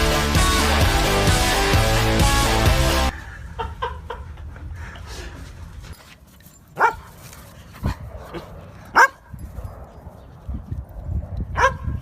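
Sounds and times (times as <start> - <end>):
dog barking: 6.8 - 7.0, 8.9 - 9.2, 11.6 - 12.0.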